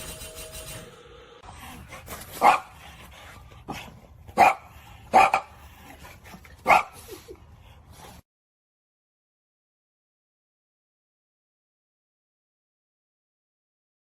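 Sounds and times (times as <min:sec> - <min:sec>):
dog barking: 0:02.4 - 0:02.8, 0:04.4 - 0:05.5, 0:06.6 - 0:07.0.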